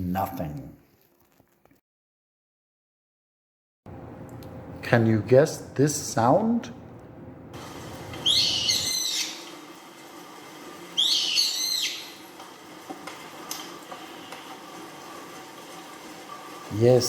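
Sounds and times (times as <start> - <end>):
bird high-pitched calls: 8.2 - 9.6, 11.0 - 12.3.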